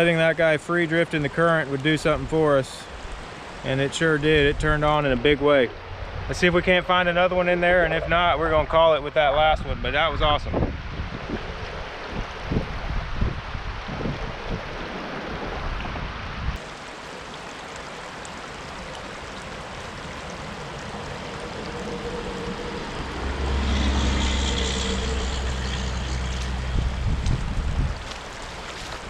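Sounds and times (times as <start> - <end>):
creek water running: 0.0 - 29.0
passing engine hum: 17.2 - 28.1.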